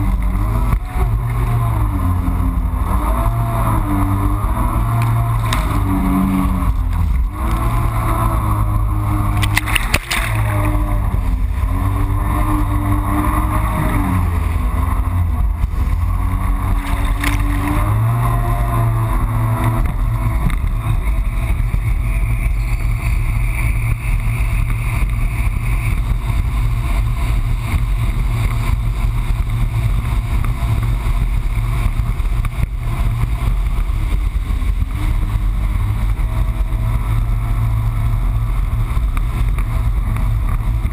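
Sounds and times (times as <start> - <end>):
jet ski engine running: 0.0 - 40.9.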